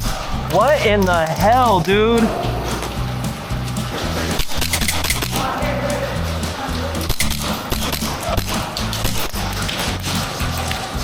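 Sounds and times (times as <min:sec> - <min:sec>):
background music with bass line: 0:00.0 - 0:11.0
sharp clicks: 0:00.4 - 0:05.5, 0:07.0 - 0:09.8.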